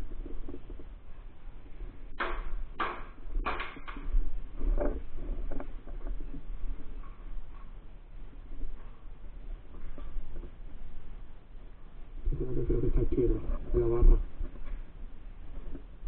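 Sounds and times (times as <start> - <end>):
steady low rumble: 0.0 - 16.0
sharp snaps or knocks: 2.2 - 4.1.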